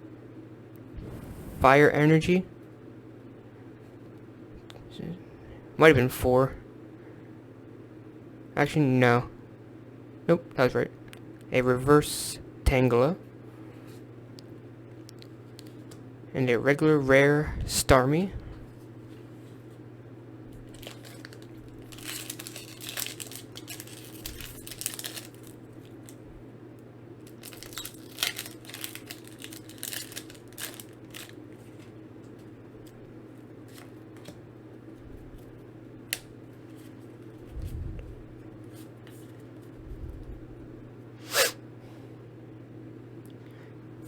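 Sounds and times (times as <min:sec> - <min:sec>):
foil wrapper tearing and crinkling: 0:20.7 - 0:26.2, 0:27.2 - 0:31.4.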